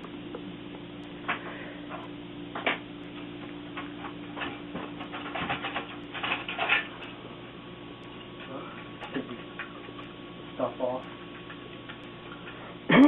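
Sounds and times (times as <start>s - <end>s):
clock ticking: 0.0s - 1.2s, 8.0s - 8.2s, 8.9s - 13.0s
steady low hum: 0.0s - 13.0s.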